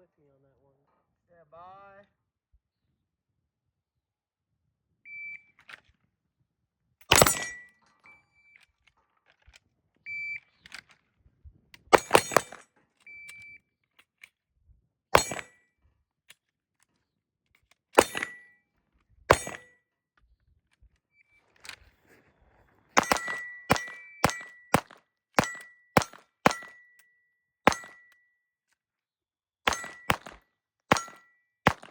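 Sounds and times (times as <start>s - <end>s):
pistol shots: 7.1s - 7.6s, 11.9s - 12.6s, 19.3s - 19.6s, 23.0s - 26.8s, 27.7s - 28.0s, 29.7s - 31.9s
faint short beeps: 13.1s - 13.7s.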